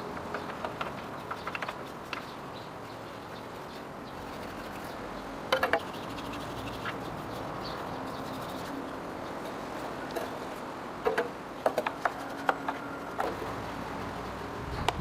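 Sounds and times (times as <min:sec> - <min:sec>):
steady background hiss: 0:00.0 - 0:15.0.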